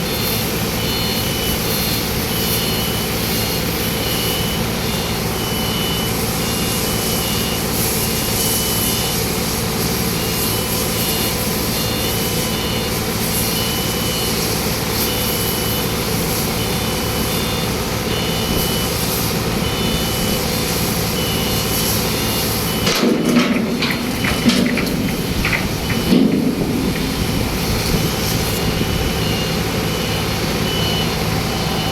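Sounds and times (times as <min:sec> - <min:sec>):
heavy vehicle engine running: 0:00.0 - 0:31.9
reversing alarm beeping: 0:00.0 - 0:31.9
metal knocks and clanks: 0:22.8 - 0:28.6.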